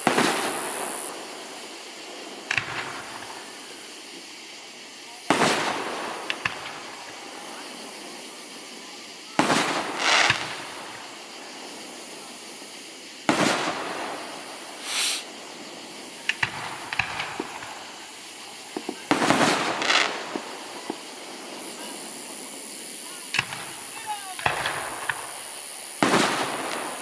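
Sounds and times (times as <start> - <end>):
firework booms: 0.0 - 3.8, 9.3 - 27.0
crackling sizzle: 0.0 - 27.0
hissing burst: 9.4 - 27.0.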